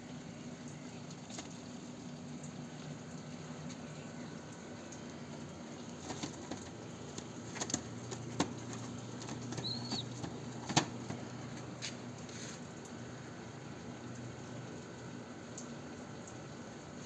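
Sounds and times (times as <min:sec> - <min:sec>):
low steady hum: 0:00.0 - 0:17.0
pigeon wing flaps: 0:06.0 - 0:11.3
young pigeon peep: 0:08.9 - 0:10.9.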